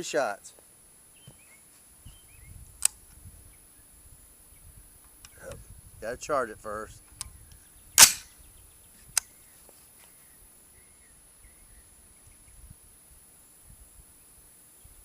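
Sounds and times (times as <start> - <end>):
rifle bolt metallic clack: 8.0 - 8.3
sharp click: 8.0 - 8.3.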